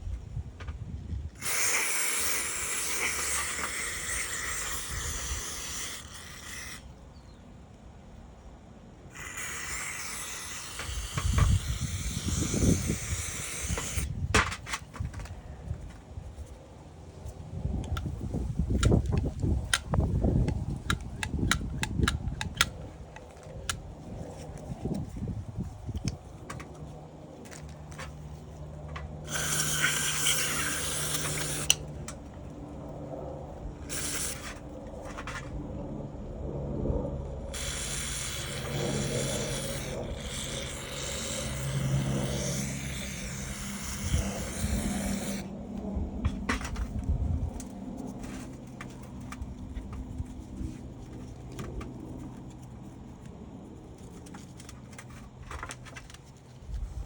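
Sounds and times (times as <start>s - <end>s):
pressurised jet hissing: 1.4s - 6.9s, 9.1s - 14.1s, 29.3s - 31.9s, 33.9s - 34.6s, 37.5s - 45.5s
low steady hum: 9.9s - 57.0s
small clicks and handling noises: 17.2s - 29.2s, 45.7s - 56.9s.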